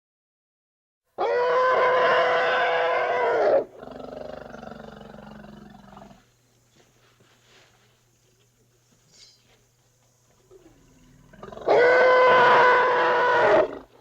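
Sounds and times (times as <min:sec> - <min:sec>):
big cat roaring: 0:01.2 - 0:06.2, 0:10.6 - 0:14.0.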